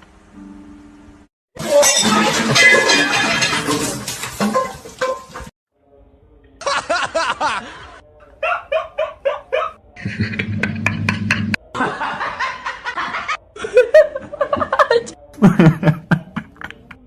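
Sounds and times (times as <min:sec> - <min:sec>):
laughing sound effects: 0:06.6 - 0:17.0
low hum: 0:10.0 - 0:12.2.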